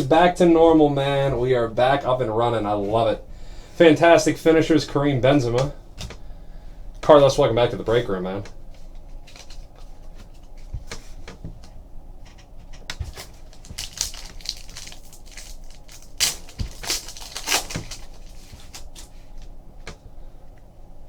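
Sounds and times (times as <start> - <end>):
foil wrapper crinkling: 7.7 - 10.8, 12.7 - 19.5.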